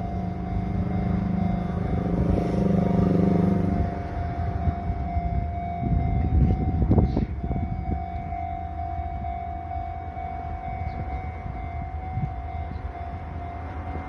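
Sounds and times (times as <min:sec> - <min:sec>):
level-crossing warning bell: 0:00.0 - 0:14.0
train passing: 0:00.0 - 0:14.0.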